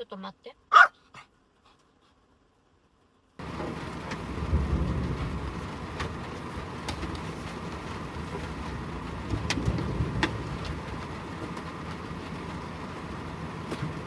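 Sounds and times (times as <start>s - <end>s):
heavy rain: 3.4s - 14.0s.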